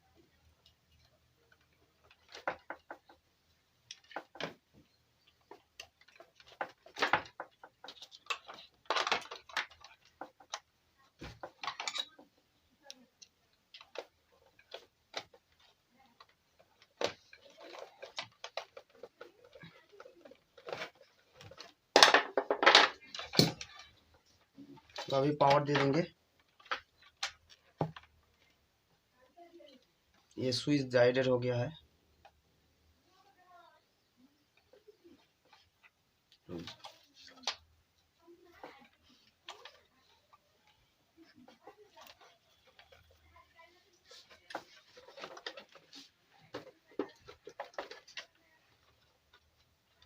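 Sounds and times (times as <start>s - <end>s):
small parts and tools clicking: 0.4s - 28.6s.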